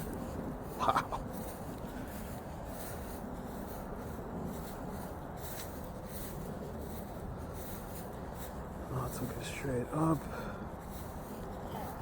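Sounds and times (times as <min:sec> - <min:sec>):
footsteps through grass: 0:00.0 - 0:12.0.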